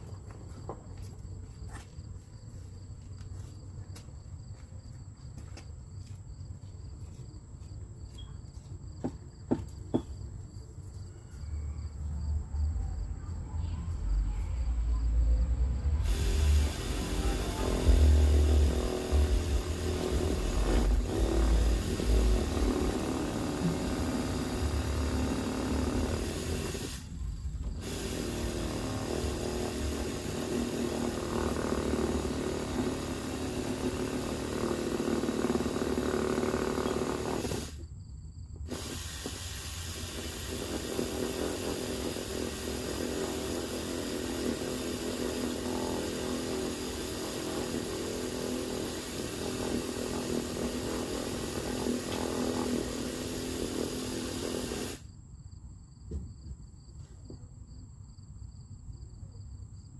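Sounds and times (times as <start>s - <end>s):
power tool running: 15.8s - 37.8s, 38.7s - 55.1s.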